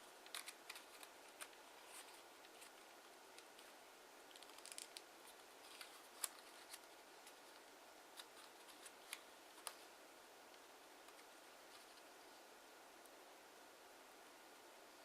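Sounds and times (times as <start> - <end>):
paper being folded: 0.1 - 9.9.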